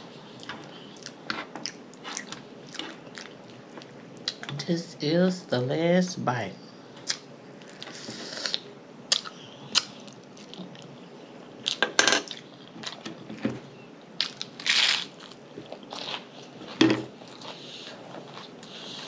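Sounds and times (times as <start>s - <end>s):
chewing food: 0.3s - 4.5s, 8.5s - 11.0s, 14.2s - 19.0s.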